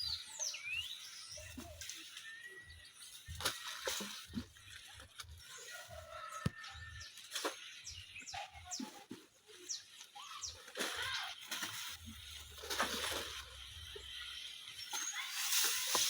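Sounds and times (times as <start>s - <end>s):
small birds chirping: 0.0s - 12.5s, 13.6s - 16.0s.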